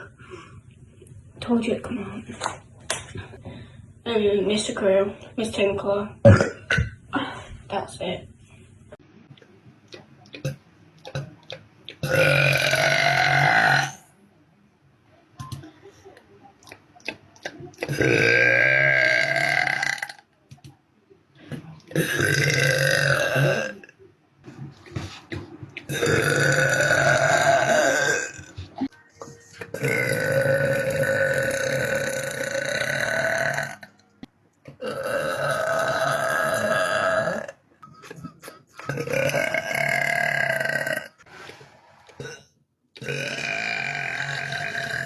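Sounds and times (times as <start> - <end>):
woman burping: 6.2 - 7.4, 12.0 - 14.0, 17.8 - 20.2, 21.9 - 23.9, 25.9 - 28.5, 29.6 - 33.9, 34.8 - 41.2, 42.2 - 45.0.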